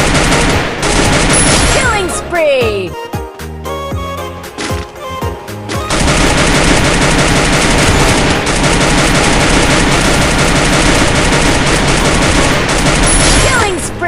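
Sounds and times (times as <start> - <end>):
rapid automatic gunfire: 0.0 - 2.1, 5.8 - 13.9.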